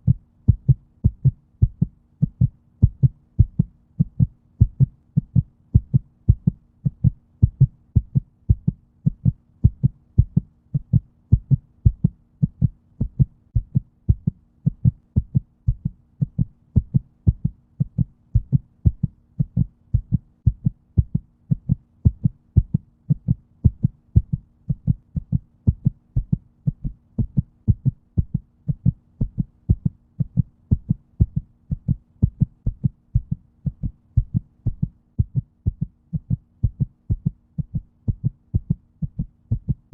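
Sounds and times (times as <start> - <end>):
faint steady hum: 0.0 - 39.9
heartbeat thumps: 0.0 - 39.9.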